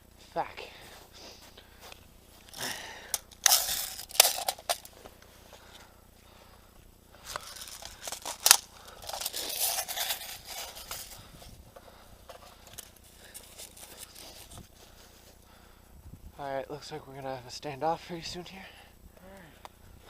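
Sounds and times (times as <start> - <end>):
crunching and scraping in snow: 9.2 - 11.3, 13.2 - 15.4.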